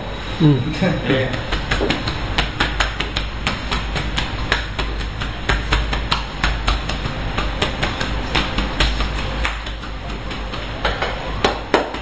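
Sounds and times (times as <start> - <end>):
hands slapping a back: 1.3 - 12.0.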